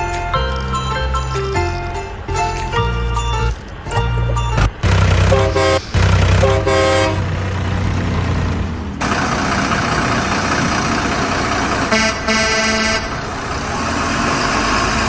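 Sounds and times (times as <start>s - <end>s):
truck engine rumbling: 0.0s - 15.0s
truck horn honking: 4.8s - 7.4s, 11.7s - 13.4s.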